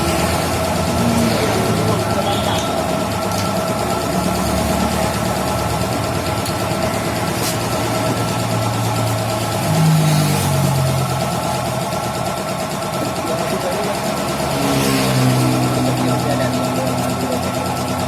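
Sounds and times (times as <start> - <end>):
motorcycle engine idling: 0.0 - 18.0.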